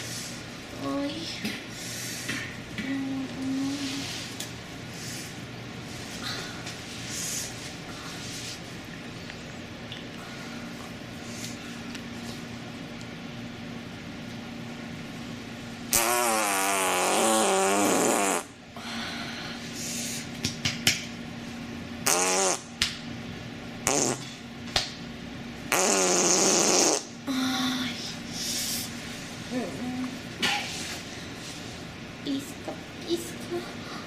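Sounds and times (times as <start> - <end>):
faint steady hum: 0.0 - 34.0
fart sound effects: 15.9 - 18.6, 22.0 - 22.7, 23.8 - 24.4, 25.7 - 27.2.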